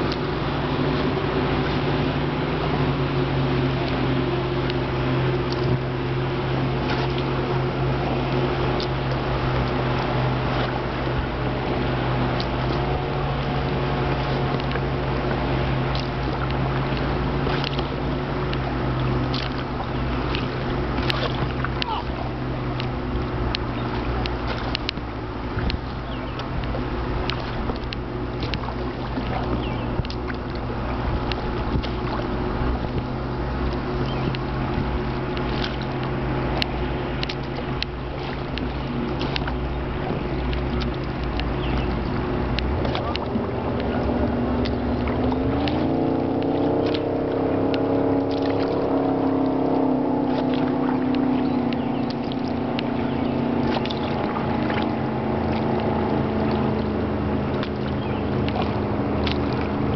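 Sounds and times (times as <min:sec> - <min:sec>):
boat engine running: 0:00.0 - 0:59.9
water splashing: 0:00.0 - 0:59.9
knocks against hull: 0:23.9 - 0:47.0.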